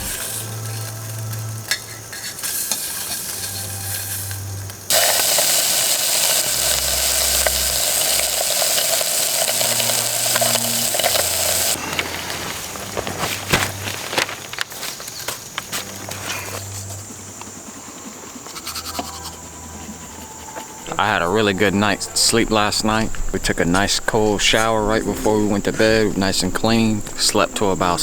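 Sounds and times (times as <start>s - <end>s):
camping stove burner hissing: 0.0s - 28.0s
faint low notes: 19.3s - 28.0s.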